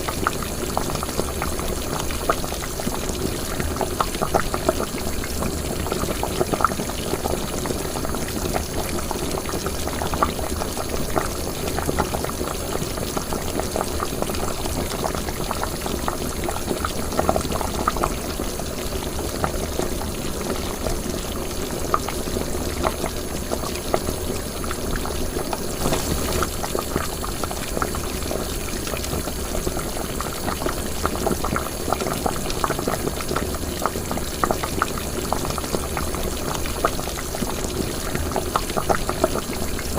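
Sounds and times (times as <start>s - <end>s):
liquid bubbling at a boil: 0.0s - 39.9s.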